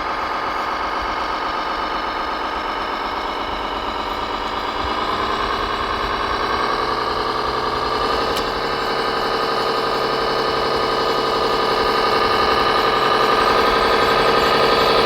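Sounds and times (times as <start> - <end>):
model machine engine drone: 0.0 - 15.0.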